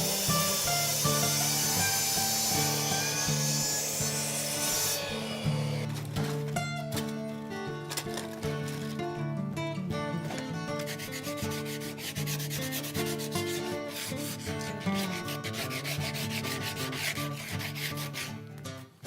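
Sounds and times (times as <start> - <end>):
hand-sanding wood: 0.0 - 5.9, 10.8 - 18.3
acoustic guitar music: 0.0 - 19.0.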